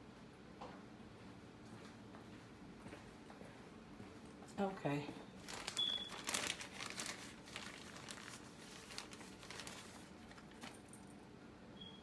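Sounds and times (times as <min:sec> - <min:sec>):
crinkling and rustling: 0:05.4 - 0:11.2.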